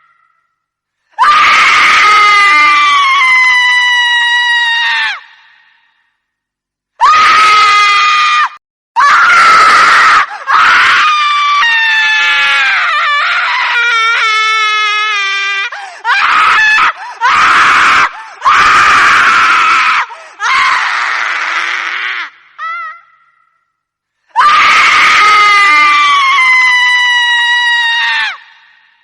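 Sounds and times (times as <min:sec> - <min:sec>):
witch shrieking laughter: 0:24.4 - 0:28.5.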